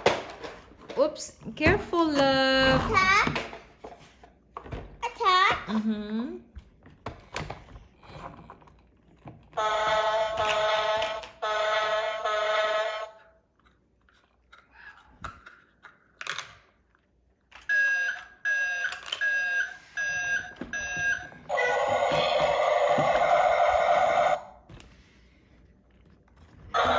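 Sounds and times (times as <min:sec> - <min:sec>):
toy buzzy electronic tones: 0:17.7 - 0:24.4.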